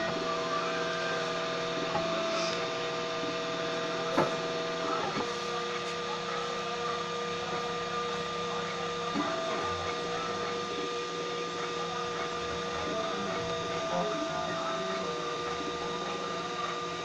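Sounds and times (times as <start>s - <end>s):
printer stepper motors whining: 0.0s - 17.0s.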